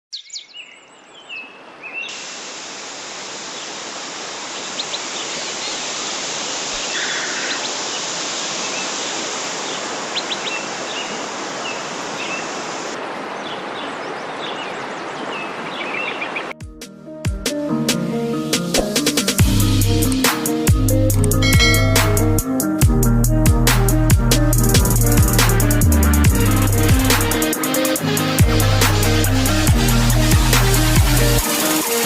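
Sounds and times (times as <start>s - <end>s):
birds chirping: 0.1s - 2.3s, 4.4s - 16.6s, 21.3s - 22.6s
waterfall rushing: 1.8s - 16.5s, 21.2s - 22.8s, 24.6s - 32.0s.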